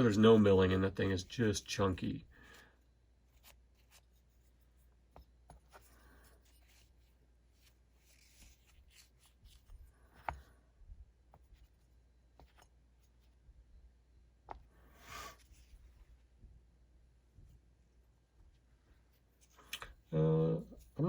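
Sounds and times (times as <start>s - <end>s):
soft rubbing: 3.2s - 10.6s, 14.5s - 16.6s.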